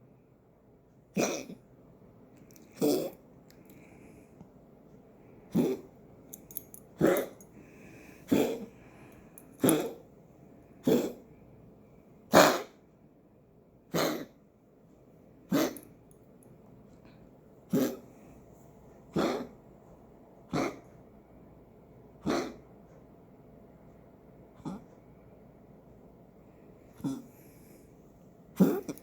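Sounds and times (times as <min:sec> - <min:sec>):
pet coughing: 0:01.1 - 0:01.6, 0:02.8 - 0:03.2, 0:05.5 - 0:05.9, 0:07.0 - 0:07.4, 0:08.3 - 0:08.7, 0:09.6 - 0:10.0, 0:10.8 - 0:11.2, 0:12.3 - 0:12.7, 0:13.9 - 0:14.4, 0:15.5 - 0:15.8, 0:17.7 - 0:18.0, 0:19.1 - 0:19.5, 0:20.5 - 0:20.8, 0:22.2 - 0:22.6, 0:27.0 - 0:27.4, 0:28.6 - 0:29.0.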